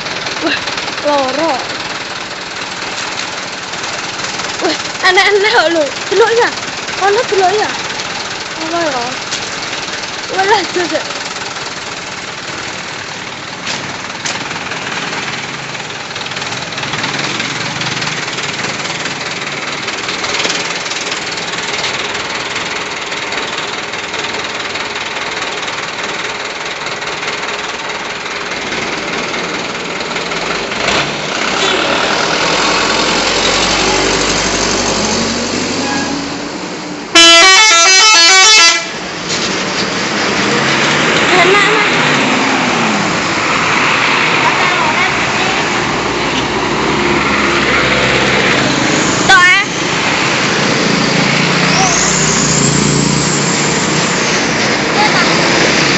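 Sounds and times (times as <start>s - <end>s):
large vehicle engine approaching: 0.0s - 37.2s, 38.8s - 55.9s
street traffic noise: 0.0s - 55.9s
bus musical horn melody: 35.7s - 36.4s, 37.1s - 39.0s.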